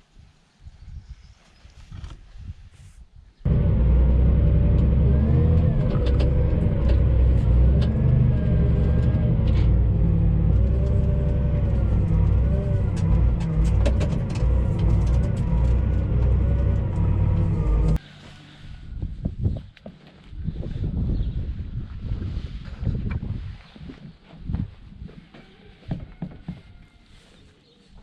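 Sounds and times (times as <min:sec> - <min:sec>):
tractor engine running: 0:03.5 - 0:18.0
clicks and rattles: 0:10.5 - 0:18.0.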